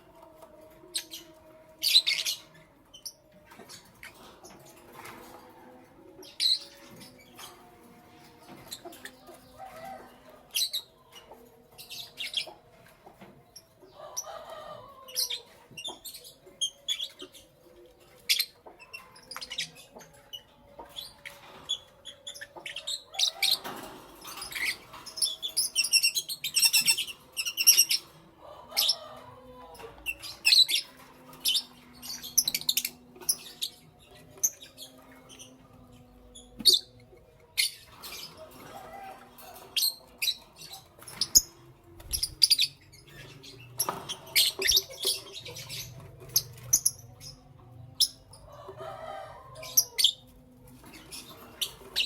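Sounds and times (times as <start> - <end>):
lovebirds chirping: 18.2 - 50.3.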